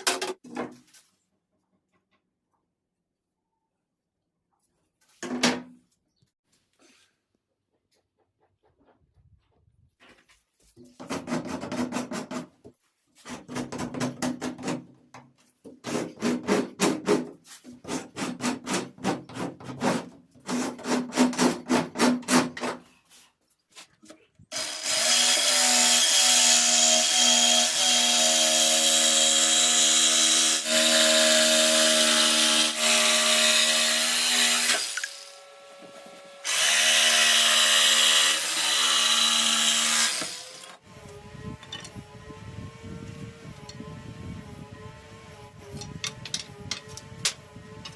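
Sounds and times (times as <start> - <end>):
electric power tool on wood: 24.5 - 47.9.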